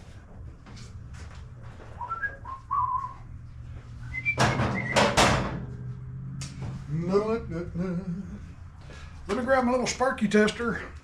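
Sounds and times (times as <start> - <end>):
steady low hum: 0.0 - 4.5, 5.2 - 9.3
person whistling: 2.0 - 3.2, 4.0 - 5.0
loud clatter: 4.2 - 5.7.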